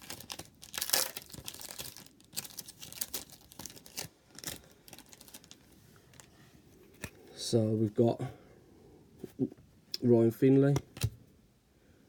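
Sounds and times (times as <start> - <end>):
foil wrapper tearing and crinkling: 0.0 - 6.3.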